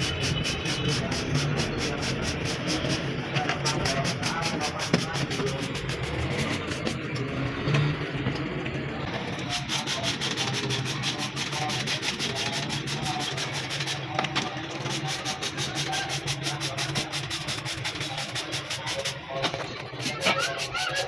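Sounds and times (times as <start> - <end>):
rhythmic scrubbing: 0.0 - 7.3, 8.9 - 21.0.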